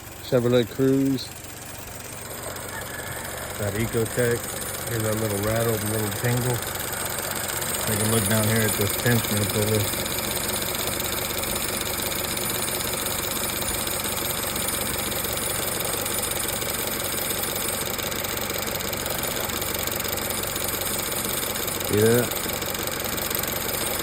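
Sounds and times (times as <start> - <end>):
light metallic rattle: 0.0 - 12.8
car engine running: 0.0 - 24.0.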